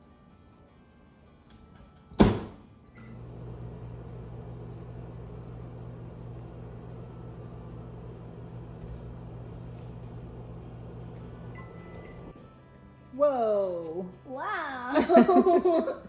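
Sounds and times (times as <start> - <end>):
microwave door slamming: 2.2 - 2.6
microwave oven humming: 2.2 - 12.5.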